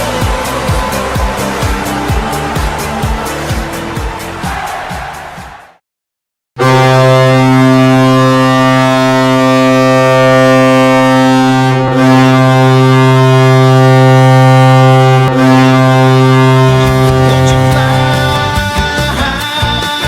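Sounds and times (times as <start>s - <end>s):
hockey goal horn blast: 6.6s - 20.0s.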